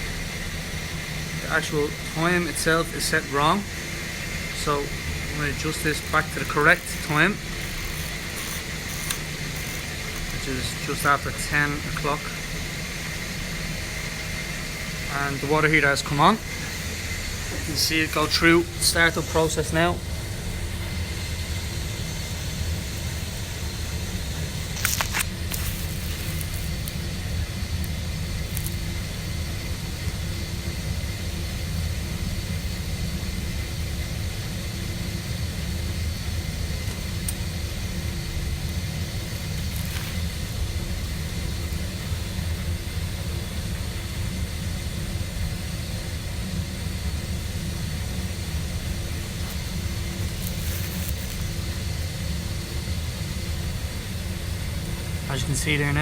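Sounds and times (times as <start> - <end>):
water heater rumbling: 0.0 - 32.4
faint steady hum: 0.0 - 56.0.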